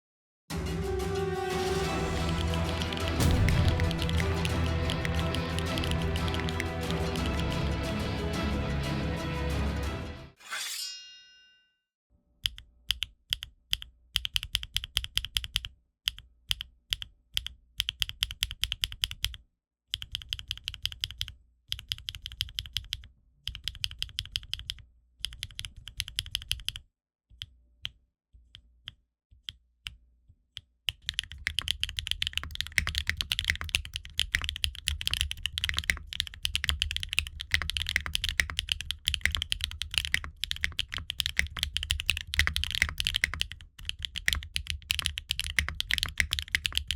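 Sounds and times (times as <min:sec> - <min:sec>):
typing on mechanical keyboard: 0:02.2 - 0:07.4, 0:12.9 - 0:15.7, 0:16.5 - 0:26.8, 0:30.9 - 0:46.9.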